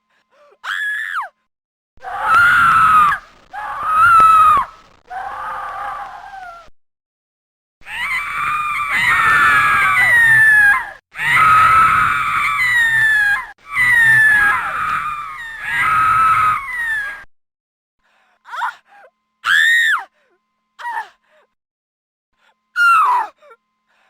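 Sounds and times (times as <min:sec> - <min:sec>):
person screaming: 0:08.0 - 0:14.8.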